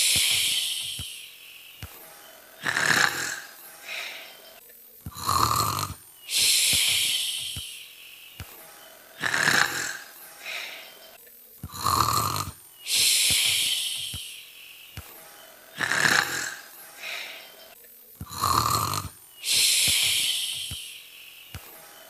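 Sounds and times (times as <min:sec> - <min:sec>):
person imitating snoring: 0:02.6 - 0:04.2, 0:05.0 - 0:07.8, 0:09.1 - 0:10.8, 0:11.6 - 0:14.4, 0:15.7 - 0:17.4, 0:18.2 - 0:21.0.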